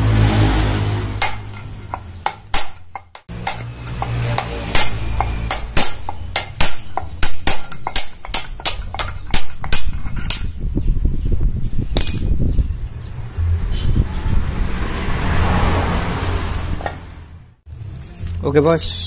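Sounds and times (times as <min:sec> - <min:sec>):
hammer tapping on metal: 0:01.2 - 0:10.5.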